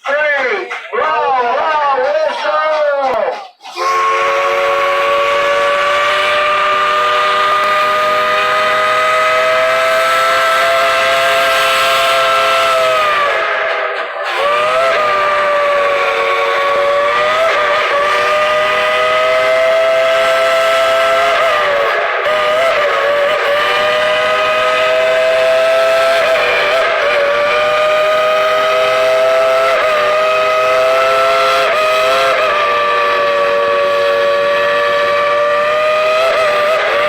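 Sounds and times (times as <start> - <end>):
steam locomotive chime whistle: 3.8 - 13.4, 14.0 - 19.9.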